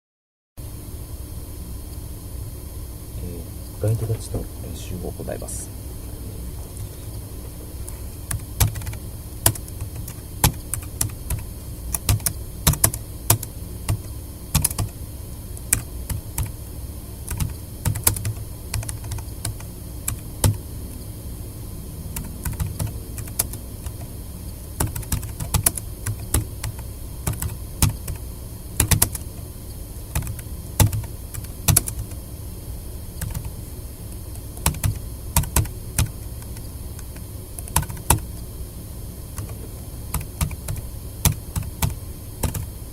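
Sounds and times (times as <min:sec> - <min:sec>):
typing on keyboard: 0:08.3 - 0:15.0, 0:15.6 - 0:16.6, 0:17.3 - 0:20.6, 0:22.2 - 0:24.1, 0:24.8 - 0:28.2, 0:28.8 - 0:29.3, 0:30.1 - 0:32.2, 0:33.2 - 0:33.5, 0:34.3 - 0:38.2, 0:39.4 - 0:42.7.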